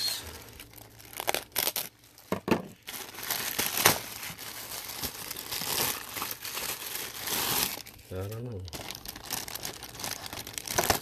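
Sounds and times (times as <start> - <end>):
packaging crinkling: 0.0 - 11.0.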